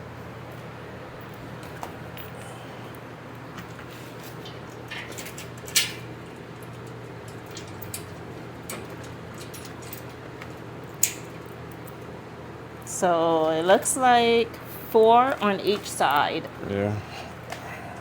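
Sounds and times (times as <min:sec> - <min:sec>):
metallic clinks of bolts and washers: 0:04.3 - 0:10.2.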